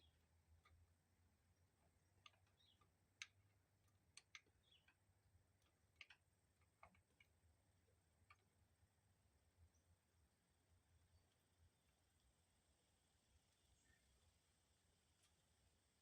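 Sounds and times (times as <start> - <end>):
faint clicks and light taps: 0.0 - 8.9, 15.1 - 15.6
faint low hum: 0.0 - 16.0
soft clicks: 2.2 - 5.0.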